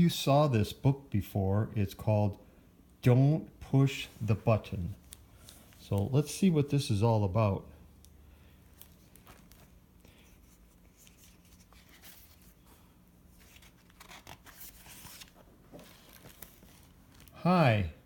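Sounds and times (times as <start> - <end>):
book pages rustling: 4.1 - 6.3, 8.7 - 17.4.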